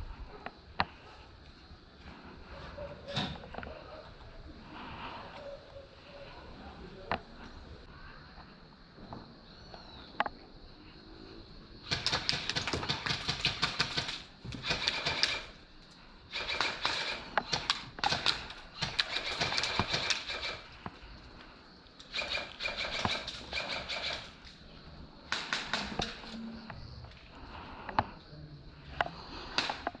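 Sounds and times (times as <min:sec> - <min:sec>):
airsoft gun firing bursts: 0:11.9 - 0:15.6, 0:16.3 - 0:20.7, 0:22.1 - 0:24.4, 0:25.3 - 0:26.2.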